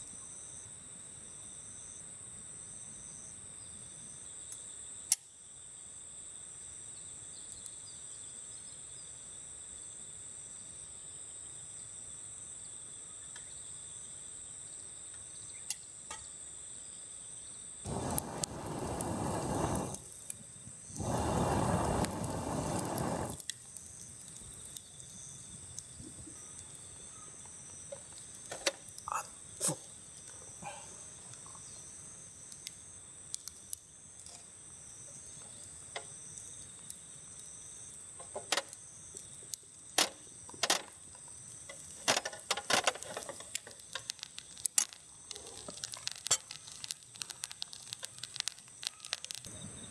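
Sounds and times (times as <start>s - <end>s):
insects singing: 17.9s - 49.9s.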